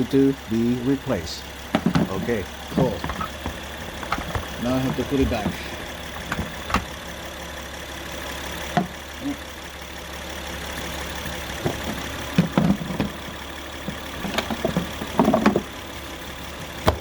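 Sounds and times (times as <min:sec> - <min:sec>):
car engine idling: 0:00.0 - 0:17.0
clicks and knocks of air filter: 0:01.6 - 0:07.0, 0:08.7 - 0:09.0, 0:11.5 - 0:15.8, 0:16.6 - 0:17.0.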